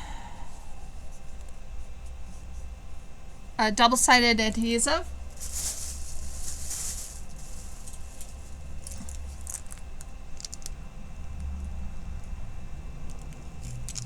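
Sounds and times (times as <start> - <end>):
light plastic crackles: 4.5 - 10.8, 13.0 - 14.0
plastic wrapping rustle: 4.8 - 10.8.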